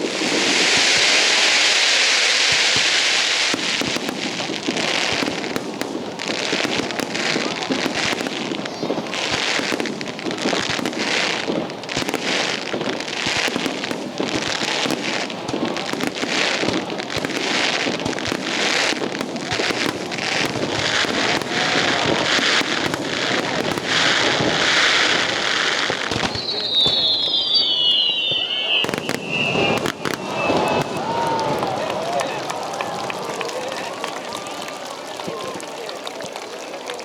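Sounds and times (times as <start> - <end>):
fireworks bangs and crackling: 0.0 - 37.0
falling whistles: 25.0 - 34.1.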